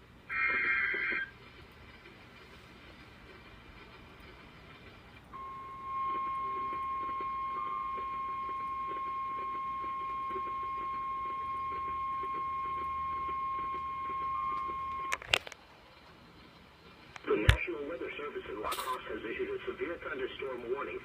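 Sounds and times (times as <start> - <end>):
weather radio alarm tone: 5.4 - 15.2.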